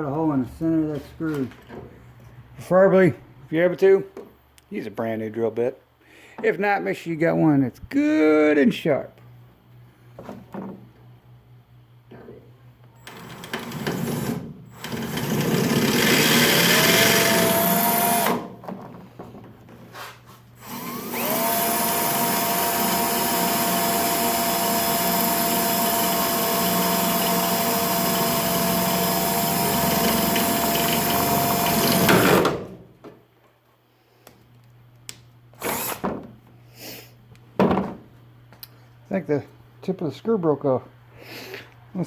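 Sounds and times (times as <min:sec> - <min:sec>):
electric drill boring into screw: 0:13.0 - 0:18.5, 0:20.6 - 0:32.6, 0:35.6 - 0:36.0.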